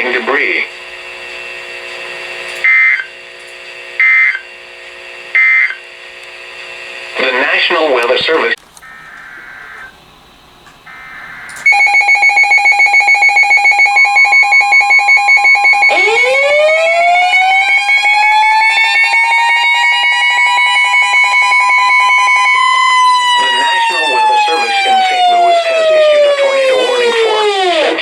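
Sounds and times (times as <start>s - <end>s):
siren winding up and down: 3.9s - 4.6s, 5.2s - 10.1s, 10.8s - 28.0s
pulsing electronic alarm tone: 5.3s - 5.9s, 8.8s - 28.0s
steady high tone: 10.8s - 28.0s.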